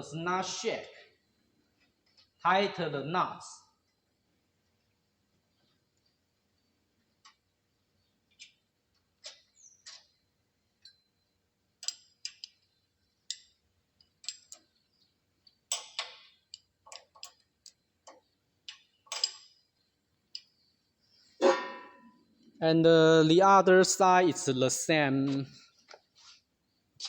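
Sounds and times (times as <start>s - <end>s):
wrench and hardware clinking: 11.8s - 14.7s, 15.4s - 20.6s.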